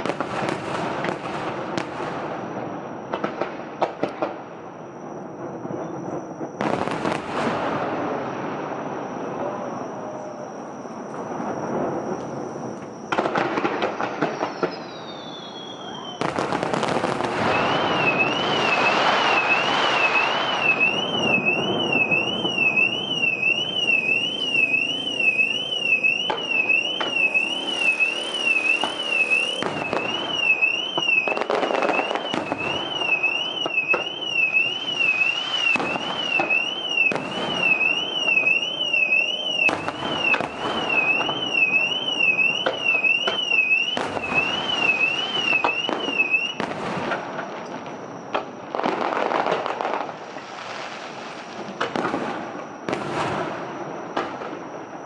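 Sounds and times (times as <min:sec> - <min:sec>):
fireworks booming and crackling: 0:00.0 - 0:55.0
car alarm wailing: 0:14.4 - 0:46.6.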